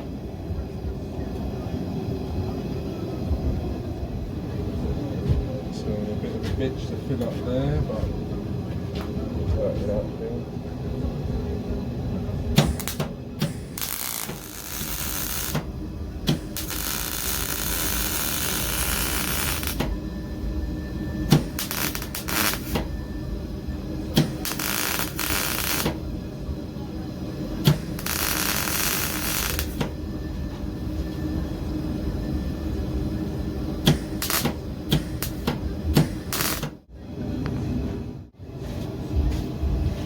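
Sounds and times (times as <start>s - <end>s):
welder arc crackling: 12.6s - 19.9s, 21.3s - 22.9s, 24.1s - 26.0s, 27.6s - 29.9s, 33.9s - 36.8s.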